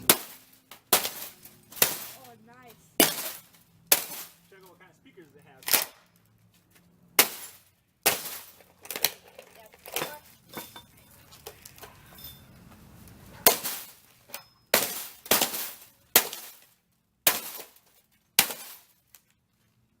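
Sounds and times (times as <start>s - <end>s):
glass breaking: 0.0s - 2.4s, 3.0s - 4.7s, 7.2s - 12.5s, 13.4s - 19.0s
glass shards rattling: 0.0s - 2.4s, 3.0s - 4.5s, 7.2s - 12.7s, 13.4s - 19.0s.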